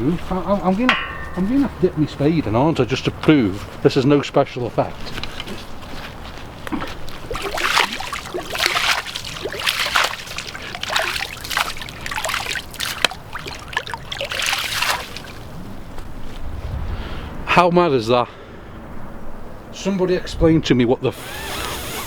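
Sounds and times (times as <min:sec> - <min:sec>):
spade sloshing in stream water: 0:07.0 - 0:15.6.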